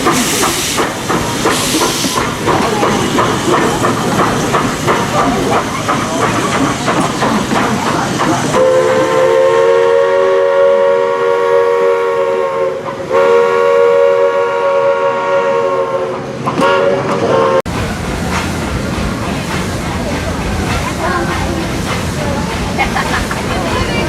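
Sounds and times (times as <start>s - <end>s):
rail clatter: 0.0s - 9.8s, 16.4s - 24.0s
steam hiss: 0.0s - 15.0s
steam locomotive whistle: 8.5s - 17.6s.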